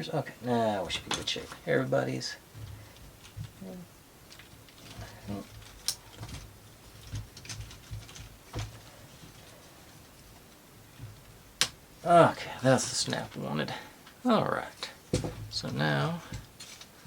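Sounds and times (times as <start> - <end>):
plywood parts clicking and knocking: 0.8 - 1.6, 4.2 - 11.8, 15.1 - 17.0.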